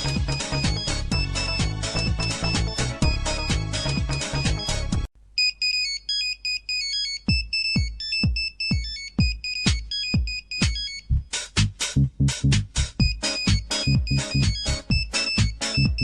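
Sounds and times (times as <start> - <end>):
kick drum: 0.0 - 4.5, 7.3 - 10.9, 11.6 - 16.0
high beeping synth melody: 0.0 - 5.1, 6.8 - 11.2, 13.0 - 16.0
busy electronic ringtone: 0.0 - 11.1, 13.0 - 16.0.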